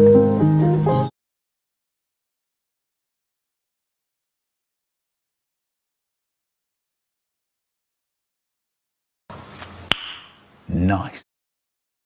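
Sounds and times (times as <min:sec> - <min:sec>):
sharp click: 0:09.6 - 0:10.4.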